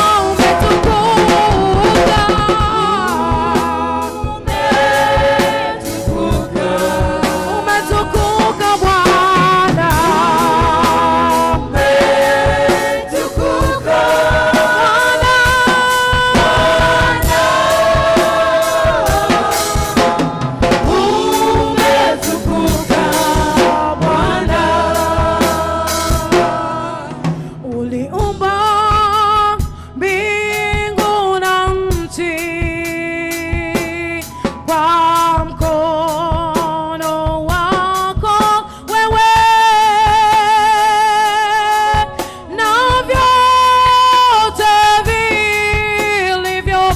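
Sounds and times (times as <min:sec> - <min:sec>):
choir singing: 0:00.0 - 0:27.4
drum kit and band: 0:00.0 - 0:46.9.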